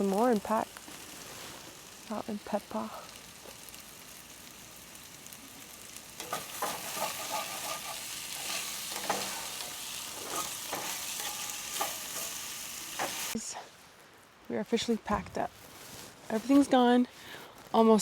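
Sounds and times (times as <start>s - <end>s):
food sizzling in a frying pan: 0.0s - 13.5s
utensil scraping a pan: 6.2s - 13.4s.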